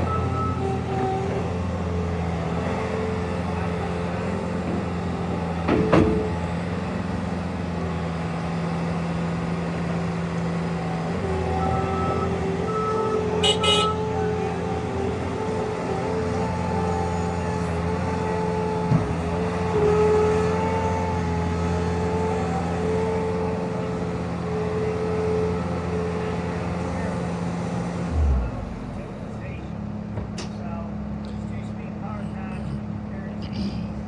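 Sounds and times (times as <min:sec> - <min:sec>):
diesel engine running: 0:00.0 - 0:34.0.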